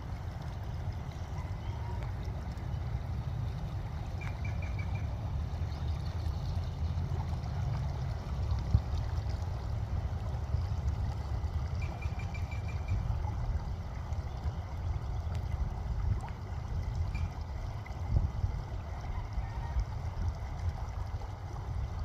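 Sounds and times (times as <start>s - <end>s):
creek water rushing: 0.0s - 22.0s.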